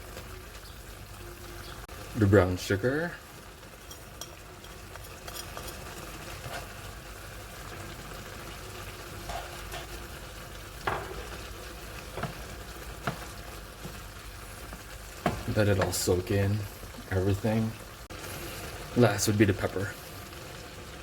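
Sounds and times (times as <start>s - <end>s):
sauce sizzling in a pan: 0.0s - 21.0s
utensil clinking against pan: 3.8s - 6.7s.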